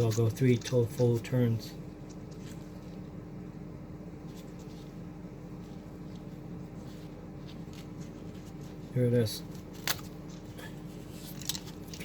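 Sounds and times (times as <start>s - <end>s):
steady low hum: 0.0s - 12.0s
tape rubbing on threads: 4.1s - 12.0s.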